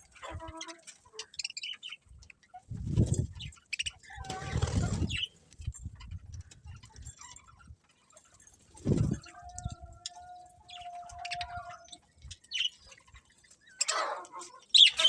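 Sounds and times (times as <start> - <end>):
budgerigars chirping: 10.7 - 15.0.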